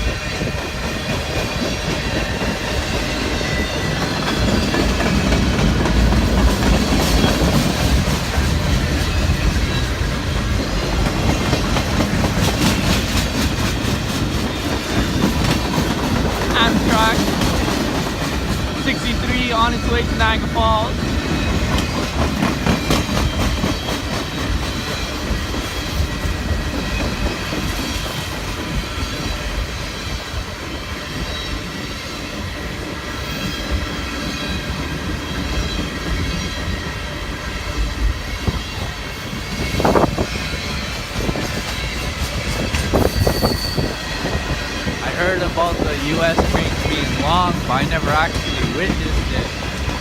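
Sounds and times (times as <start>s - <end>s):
freight train cars rolling: 0.0s - 50.0s
train wheel squeals: 0.0s - 50.0s
wheels clacking over rail joints: 0.4s - 29.5s.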